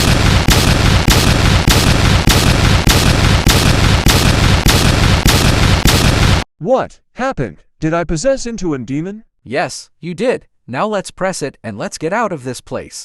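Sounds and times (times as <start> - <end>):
harsh weapon attack blasts: 0.0 - 6.5.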